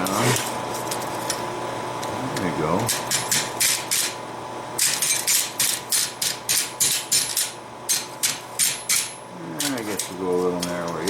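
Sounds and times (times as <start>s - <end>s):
hammer striking steel on anvil: 4.8s - 9.2s.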